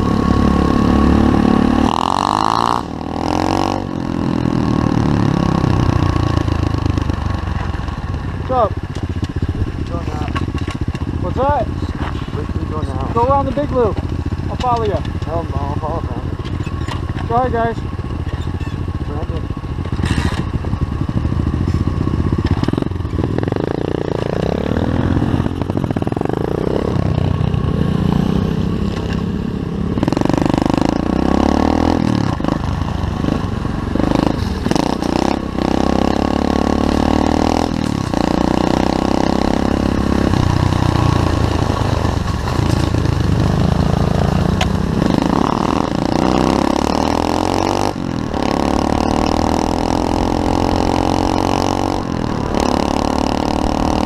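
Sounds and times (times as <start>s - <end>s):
motorbike engine revving: 0.0s - 54.0s.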